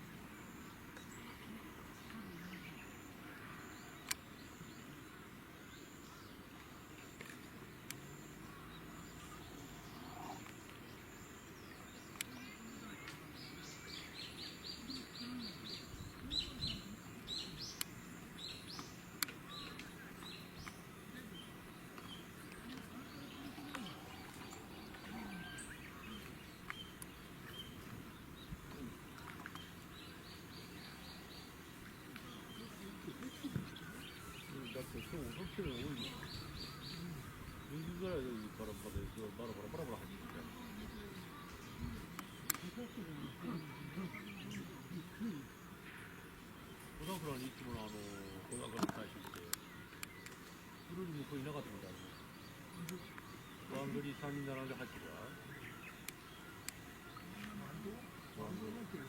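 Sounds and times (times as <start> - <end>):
birds chirping: 0.0 - 59.0
faint background hiss: 0.0 - 59.0
sharp clicks: 4.0 - 4.2, 42.1 - 42.7.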